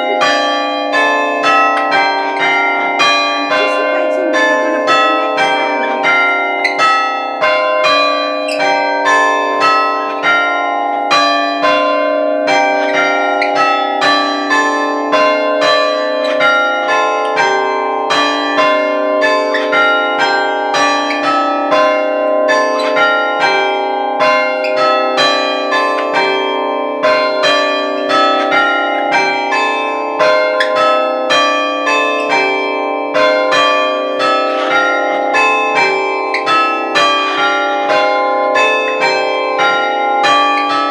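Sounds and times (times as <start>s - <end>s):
church bells chiming: 0.0s - 40.9s.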